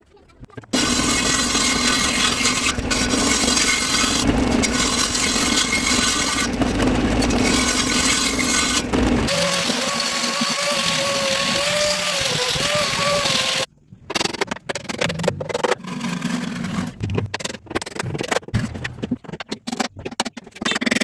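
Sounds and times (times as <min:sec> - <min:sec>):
power tool rasping wood: 0:00.8 - 0:13.7.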